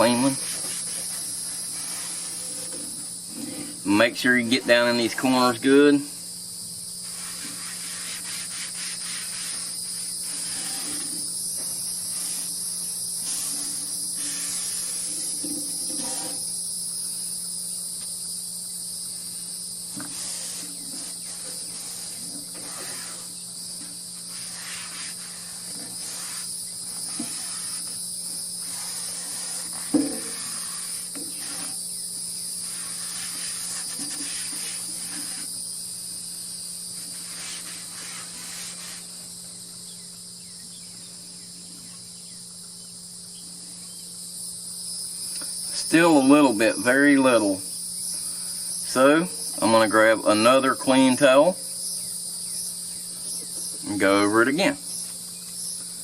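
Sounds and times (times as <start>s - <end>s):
rag rubbing on metal griddle: 0.0s - 4.1s, 7.0s - 16.6s, 19.9s - 31.9s, 32.5s - 35.6s, 36.9s - 39.3s
insects chorus: 0.0s - 56.0s.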